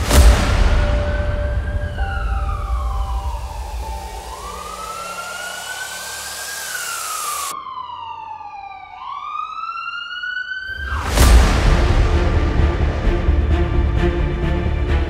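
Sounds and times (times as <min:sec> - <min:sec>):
music: 0:00.0 - 0:06.6, 0:10.8 - 0:15.0
loud hit: 0:00.0 - 0:07.5, 0:10.7 - 0:14.9
siren-like sweeping tone: 0:00.0 - 0:11.5.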